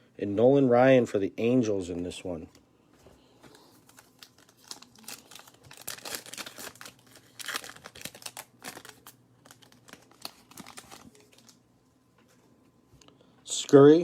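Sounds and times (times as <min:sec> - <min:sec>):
trading cards crinkling and clicking: 0:03.4 - 0:11.6.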